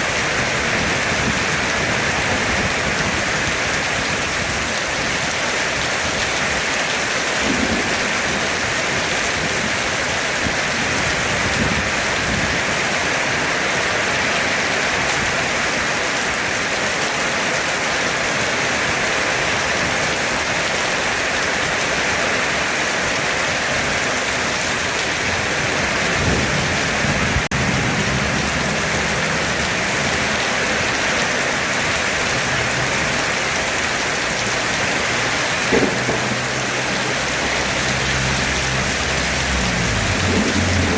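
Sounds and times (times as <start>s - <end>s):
heavy rain pouring: 0.0s - 40.9s
thunder rumble: 7.2s - 12.7s, 25.2s - 40.9s.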